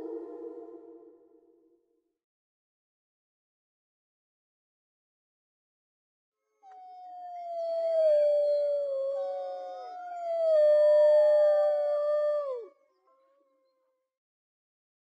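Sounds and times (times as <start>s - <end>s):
wolves howling: 0.0s - 1.2s, 6.9s - 12.7s.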